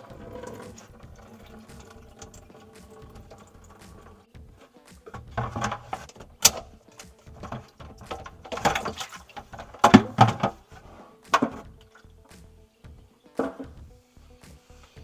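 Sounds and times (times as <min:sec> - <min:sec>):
knocks and clunks under sink: 0:05.2 - 0:06.2, 0:07.3 - 0:10.6.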